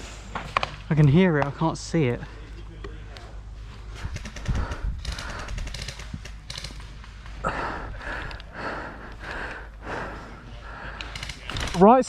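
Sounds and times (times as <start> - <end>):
person breathing hard: 3.9 - 6.1, 7.3 - 11.4.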